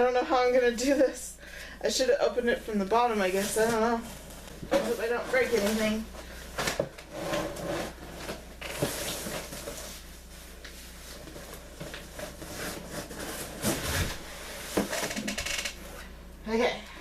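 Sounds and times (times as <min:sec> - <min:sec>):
cardboard boxes scraping: 0:07.1 - 0:10.0, 0:11.1 - 0:15.0.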